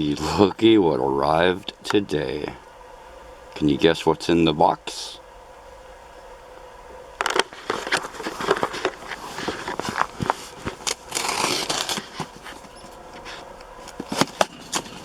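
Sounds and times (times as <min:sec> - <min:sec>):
cardboard box being opened: 0:07.2 - 0:15.0
cardboard tearing: 0:07.2 - 0:15.0.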